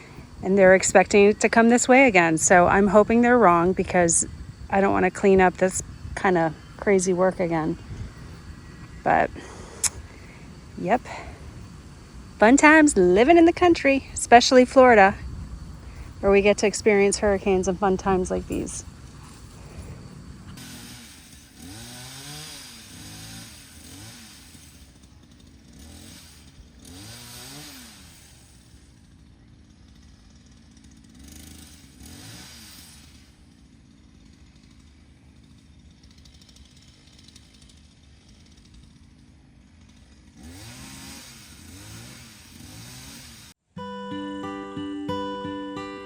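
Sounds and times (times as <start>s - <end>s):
chainsaw revving and idling: 0.0s - 43.6s.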